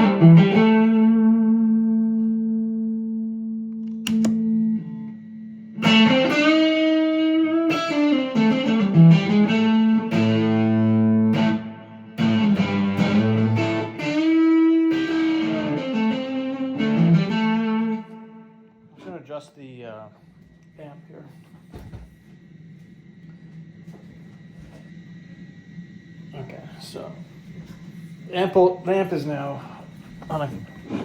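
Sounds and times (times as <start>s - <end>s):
electric guitar notes ringing: 0.0s - 19.0s.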